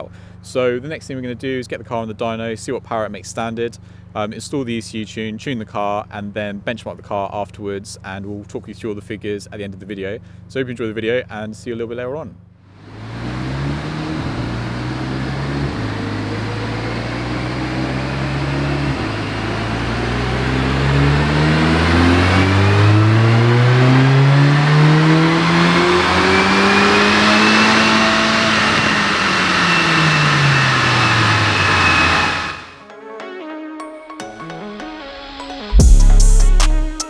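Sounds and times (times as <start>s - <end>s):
car engine revving on dyno: 12.8s - 32.8s.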